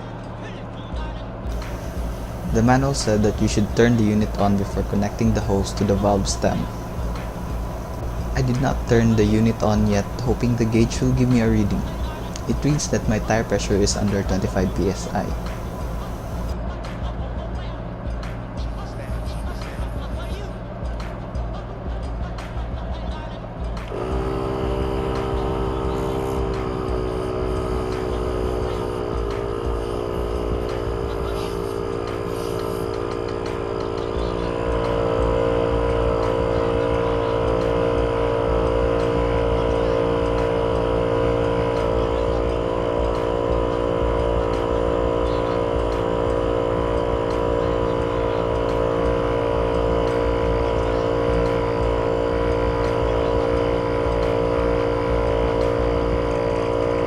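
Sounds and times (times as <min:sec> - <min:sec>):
air compressor motor hum: 0:01.5 - 0:16.6, 0:23.9 - 0:57.0.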